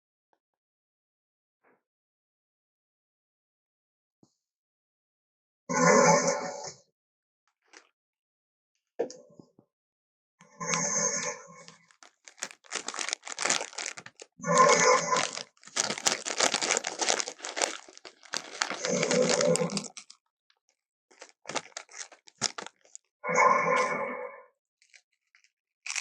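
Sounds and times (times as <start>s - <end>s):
crunching and tearing: 11.6s - 20.2s, 21.1s - 23.1s, 24.8s - 26.0s.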